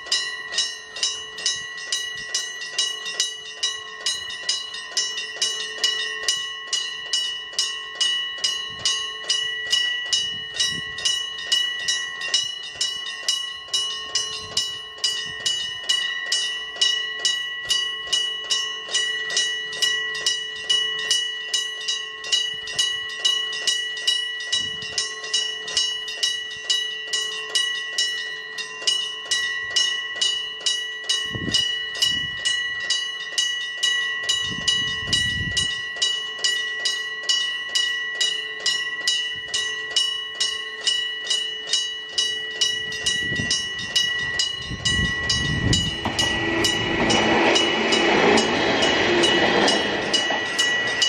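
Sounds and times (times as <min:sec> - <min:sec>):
level-crossing warning bell: 0:00.0 - 0:51.0.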